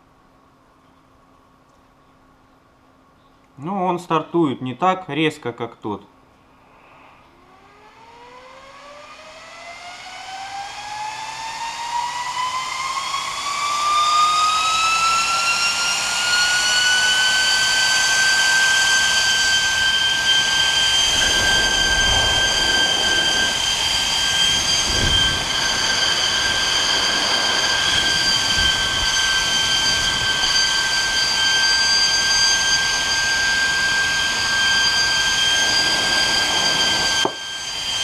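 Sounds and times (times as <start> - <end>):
cooling fan whine and air rush: 6.1 - 38.0
low bumps: 19.8 - 30.9.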